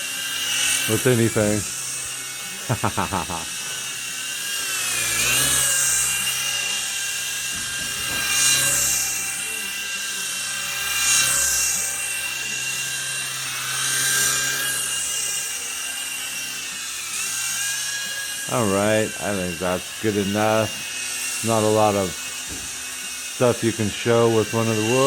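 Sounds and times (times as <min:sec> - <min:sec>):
toy helicopter motor whine: 0:00.0 - 0:25.0.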